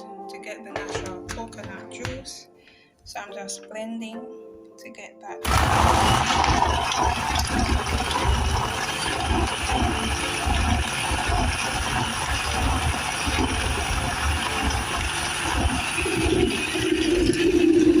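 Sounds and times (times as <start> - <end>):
electric blender running: 5.4 - 18.0.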